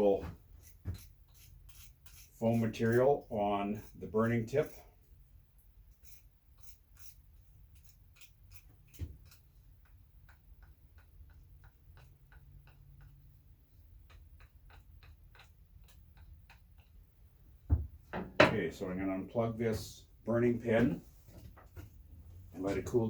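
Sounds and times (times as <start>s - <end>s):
knock: 17.7s - 18.6s.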